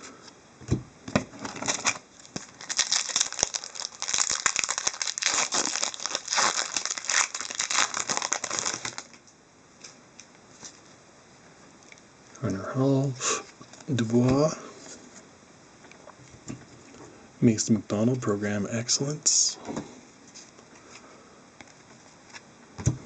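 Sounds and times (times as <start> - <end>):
wrapper crinkling and tearing: 1.4 - 9.2.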